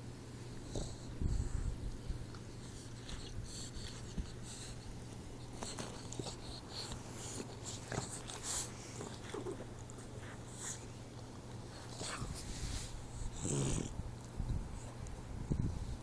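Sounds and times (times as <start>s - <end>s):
steady low hum: 0.0s - 16.0s
small clicks and snuffles: 1.9s - 15.2s
puppy snoring: 13.1s - 14.0s.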